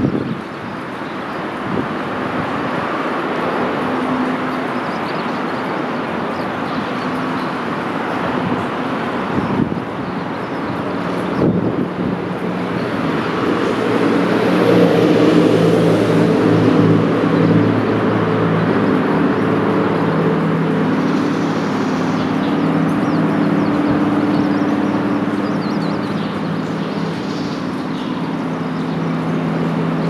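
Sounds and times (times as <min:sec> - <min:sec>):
rushing river water: 0:00.0 - 0:30.0.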